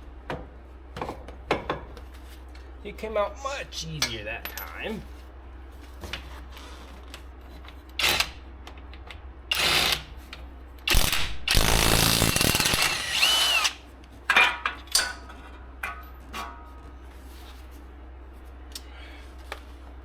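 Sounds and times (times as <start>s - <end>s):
power tool bursts: 10.9s - 13.8s.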